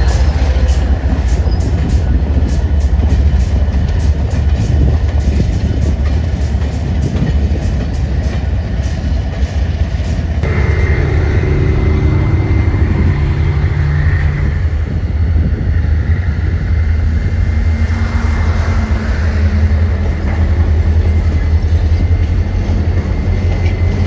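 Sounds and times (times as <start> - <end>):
train rumbling past: 0.0 - 24.0
engine hum with high whine: 10.4 - 17.7.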